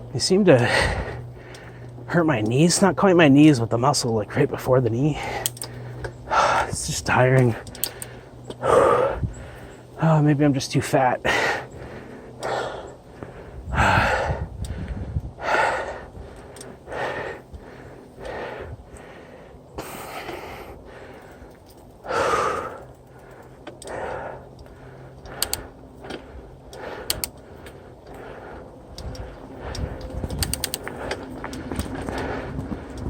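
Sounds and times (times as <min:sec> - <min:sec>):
person breathing hard: 0:00.6 - 0:02.1, 0:05.1 - 0:06.8, 0:07.5 - 0:10.0, 0:11.2 - 0:33.0
sharp clicks: 0:05.3 - 0:06.7, 0:07.4 - 0:08.6, 0:22.4 - 0:27.8, 0:28.9 - 0:32.2.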